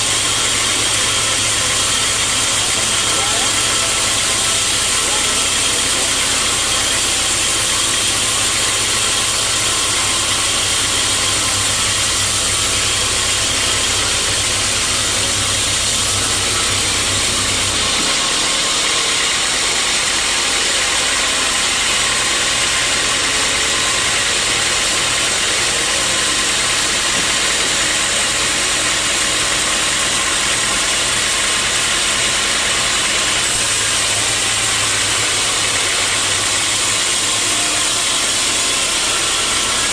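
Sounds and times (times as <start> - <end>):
motor low hum: 0.0 - 20.5
loud high-pitched machine noise: 0.0 - 39.9.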